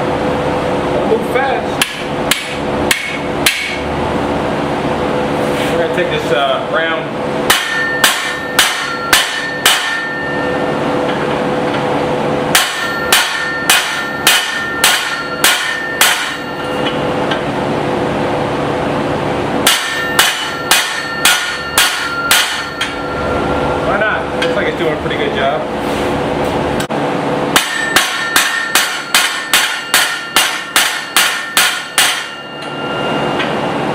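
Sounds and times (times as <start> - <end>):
steady hum: 0.0 - 33.9
hammer striking on anvil: 1.8 - 3.8, 7.5 - 11.8, 12.5 - 17.4, 19.6 - 23.4, 27.5 - 33.6.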